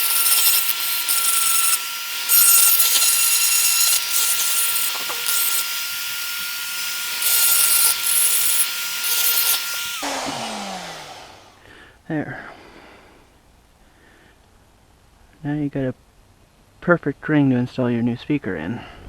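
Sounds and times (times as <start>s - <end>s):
hissing grind of cutting: 0.0s - 11.7s
rotary tool whining: 0.0s - 11.7s.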